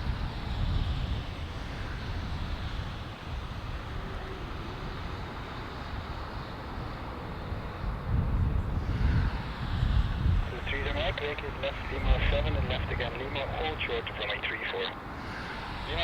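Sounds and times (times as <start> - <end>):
jet airliner rumble: 0.0 - 16.0.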